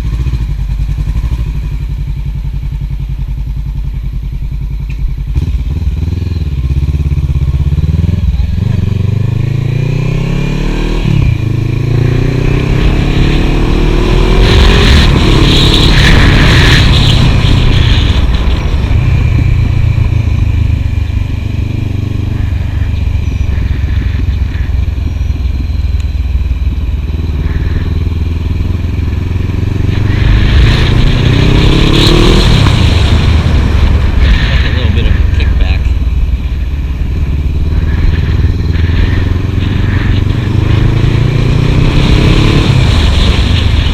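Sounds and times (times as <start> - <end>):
motorcycle engine accelerating: 0.0 - 43.9.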